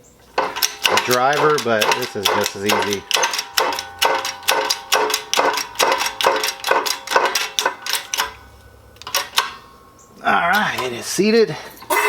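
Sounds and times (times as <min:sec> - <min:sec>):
shop press clicking: 0:00.4 - 0:08.4, 0:09.0 - 0:09.6.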